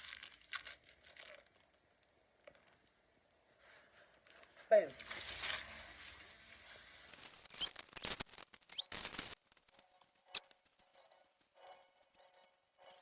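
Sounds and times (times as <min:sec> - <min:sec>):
rustling of packaging: 0:00.0 - 0:01.8, 0:03.6 - 0:09.8.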